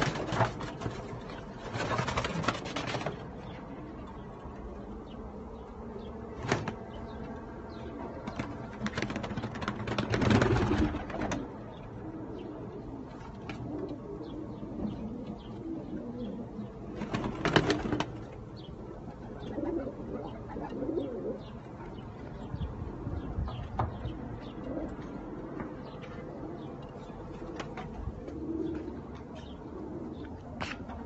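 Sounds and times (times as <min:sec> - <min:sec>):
wings flapping: 0:00.0 - 0:03.4, 0:06.4 - 0:06.9, 0:08.2 - 0:11.6, 0:16.9 - 0:18.4
pigeons cooing: 0:00.0 - 0:31.0.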